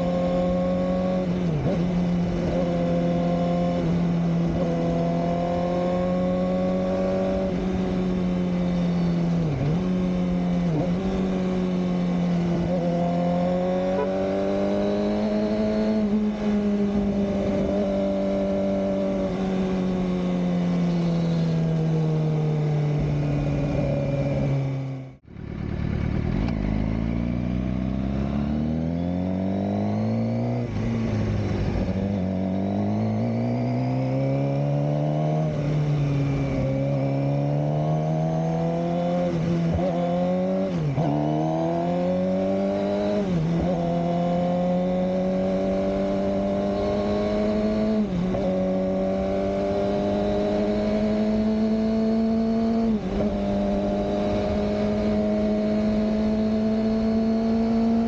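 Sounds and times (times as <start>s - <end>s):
motorcycle engine running: 22.0s - 33.3s.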